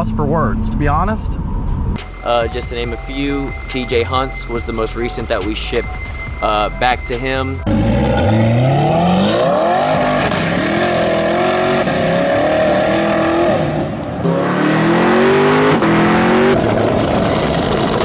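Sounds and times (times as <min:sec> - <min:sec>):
car engine accelerating hard: 0:07.6 - 0:18.0.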